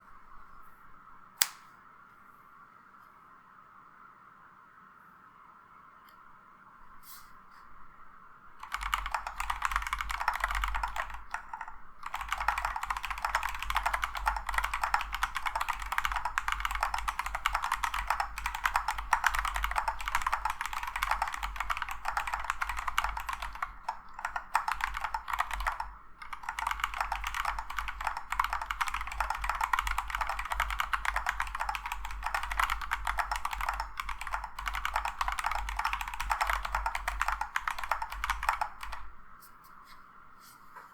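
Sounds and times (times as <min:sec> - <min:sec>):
keyboard keystroke clicks: 0:01.4 - 0:01.7, 0:08.6 - 0:39.1.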